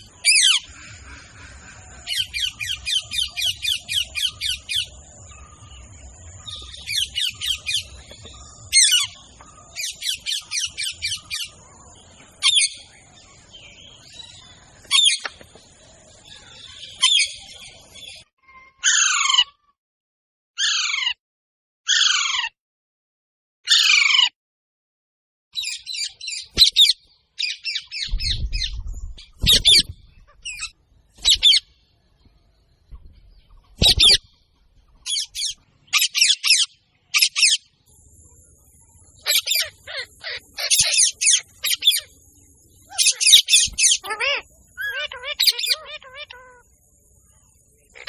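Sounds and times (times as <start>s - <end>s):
parrot squawking: 18.8s - 19.6s, 20.6s - 21.2s, 21.9s - 22.5s, 25.6s - 31.6s, 33.7s - 34.2s, 35.0s - 37.6s, 39.2s - 42.1s, 42.9s - 46.6s.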